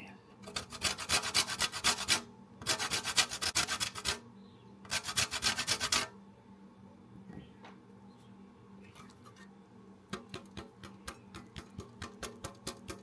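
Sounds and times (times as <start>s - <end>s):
lime rasping on grater: 0.4s - 4.2s, 4.9s - 6.1s.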